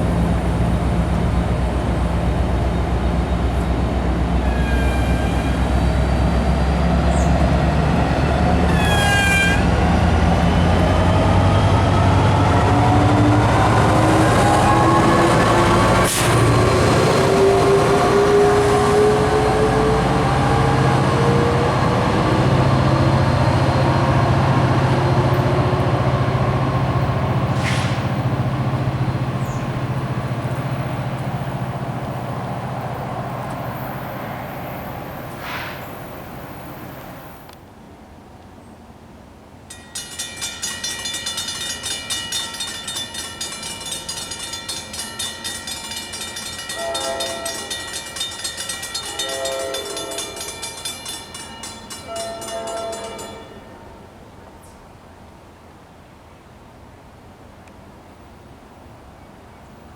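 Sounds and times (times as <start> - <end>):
diesel locomotive engine drone: 0.0 - 38.0, 39.7 - 59.9
train wheel squeals: 4.4 - 7.5, 8.1 - 10.0.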